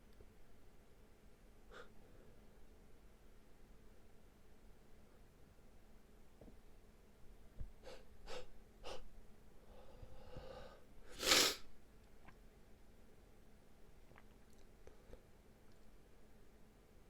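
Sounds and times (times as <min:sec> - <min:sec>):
person breathing in: 0:09.6 - 0:11.6.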